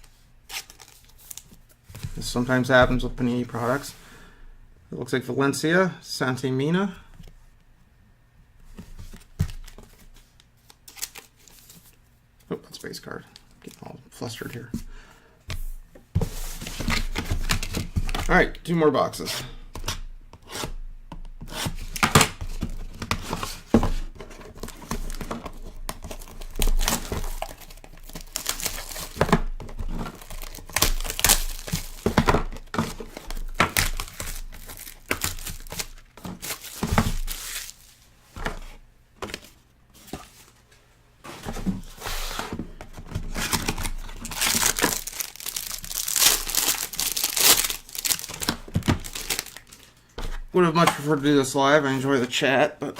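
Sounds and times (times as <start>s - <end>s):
plastic wrapping crinkling: 24.4s - 38.0s, 43.0s - 50.5s.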